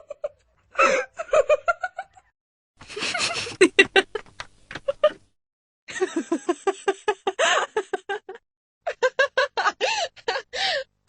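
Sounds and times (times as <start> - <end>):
woman laughing: 2.8 - 5.2, 5.9 - 10.8.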